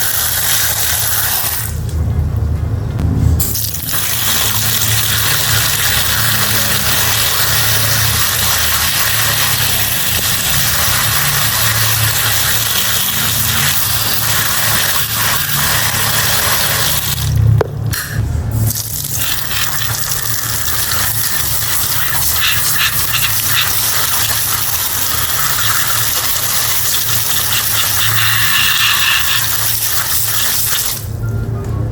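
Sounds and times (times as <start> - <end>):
water spray hissing: 0.0 - 1.8, 3.4 - 17.4, 18.5 - 31.1
low motor hum: 1.7 - 19.0, 30.9 - 31.9.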